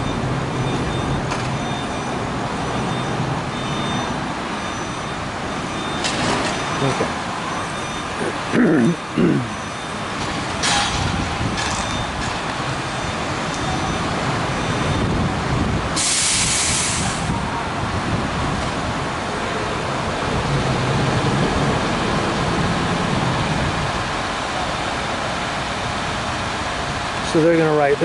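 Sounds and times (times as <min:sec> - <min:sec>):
traffic on a wet road: 0:00.0 - 0:28.0
sharp hiss: 0:16.0 - 0:17.3.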